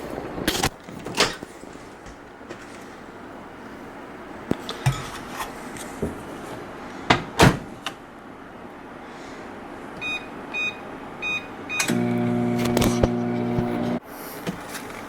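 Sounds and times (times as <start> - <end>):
kitchen things clattering: 4.6 - 6.4
microwave keypad beeps: 10.0 - 13.2.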